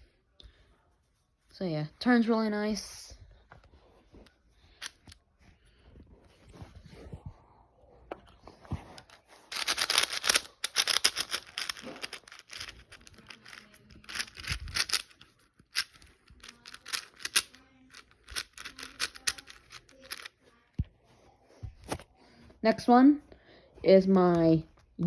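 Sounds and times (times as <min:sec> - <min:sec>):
puzzle cube clicking as turned: 0:09.5 - 0:20.3.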